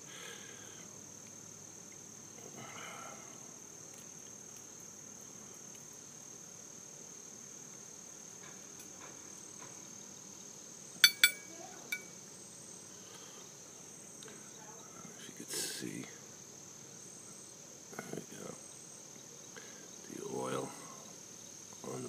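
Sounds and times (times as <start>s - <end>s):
high-pitched insect trill: 0.0s - 22.0s
sharp metallic clinks: 11.0s - 12.2s.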